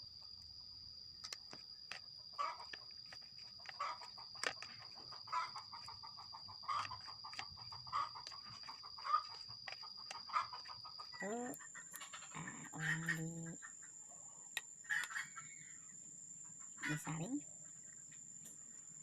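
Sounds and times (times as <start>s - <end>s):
chicken clucking: 2.4s - 2.8s, 3.6s - 13.8s.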